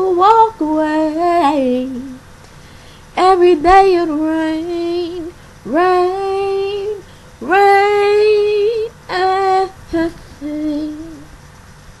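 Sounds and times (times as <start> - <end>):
singer breathing: 2.5 - 3.2, 7.0 - 7.4
woman singing long notes: 3.2 - 11.3.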